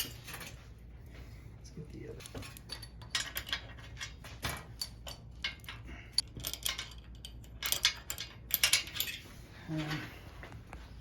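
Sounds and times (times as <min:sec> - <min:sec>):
metal clicks and rattles: 0:02.2 - 0:10.0.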